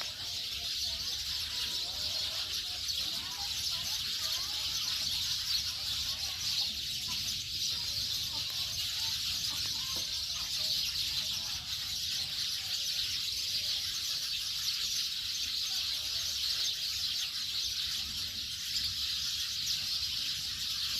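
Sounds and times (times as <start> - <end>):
chicken clucking: 0.0 - 12.4
bird calls: 0.0 - 20.9.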